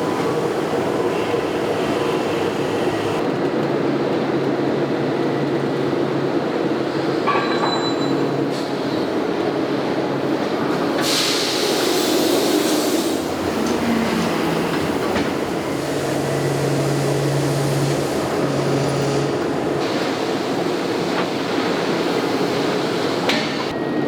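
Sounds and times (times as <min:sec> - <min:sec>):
factory machinery din: 0:00.0 - 0:03.2, 0:10.6 - 0:24.0.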